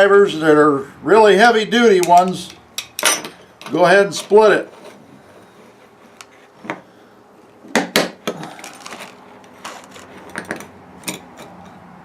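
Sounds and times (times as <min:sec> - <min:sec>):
screwdrivers clinking on copper pipe: 0:02.0 - 0:03.8.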